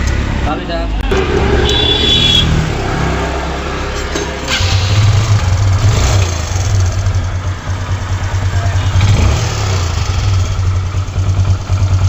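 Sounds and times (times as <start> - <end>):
motorcycle engine idling: 4.5 - 12.0.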